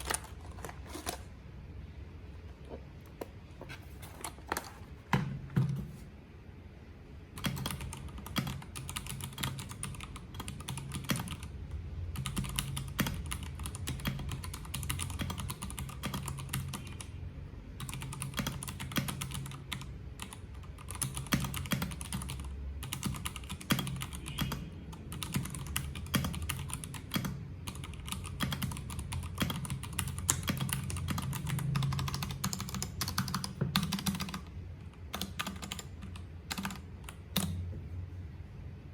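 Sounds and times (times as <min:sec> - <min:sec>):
mechanical keyboard typing: 0:00.0 - 0:01.3, 0:04.0 - 0:05.9, 0:07.3 - 0:17.1, 0:17.8 - 0:37.6.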